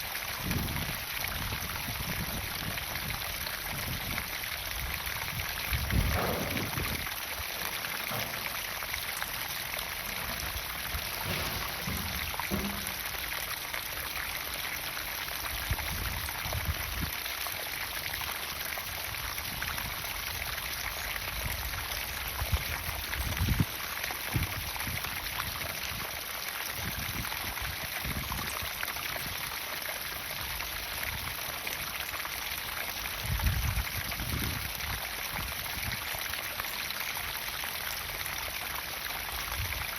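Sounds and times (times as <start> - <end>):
water pouring and splashing: 0.0 - 39.9
low thumps: 5.8 - 13.2.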